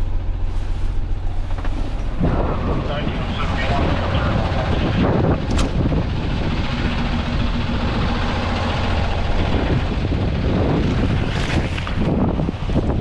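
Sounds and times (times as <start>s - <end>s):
truck engine running: 0.0s - 13.0s
wind buffeting microphone: 1.0s - 13.0s.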